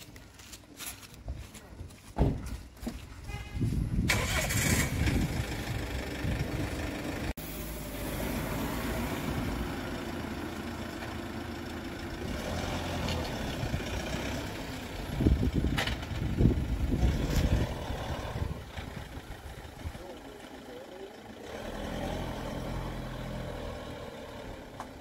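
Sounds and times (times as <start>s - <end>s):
engine running: 4.1s - 25.0s.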